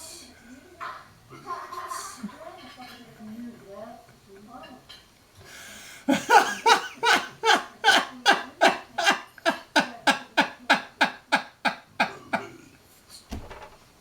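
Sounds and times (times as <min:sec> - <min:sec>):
man laughing hard: 0:06.1 - 0:12.5.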